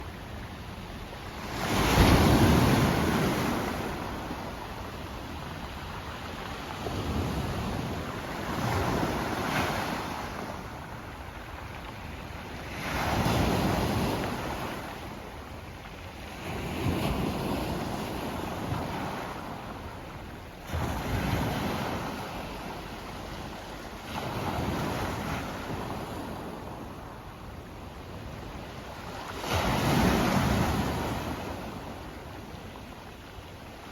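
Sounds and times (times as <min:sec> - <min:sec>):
waves washing over pebbles: 0:00.2 - 0:27.2.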